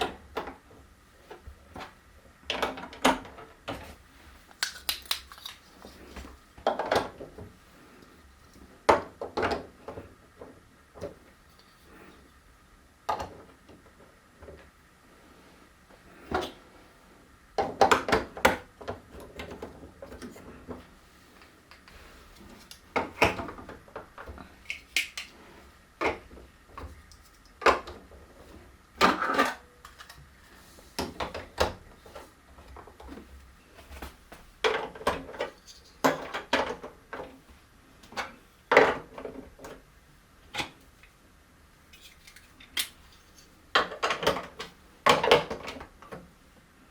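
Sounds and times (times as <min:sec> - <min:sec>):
plastic pieces clacking: 0:04.5 - 0:05.8, 0:24.6 - 0:25.3.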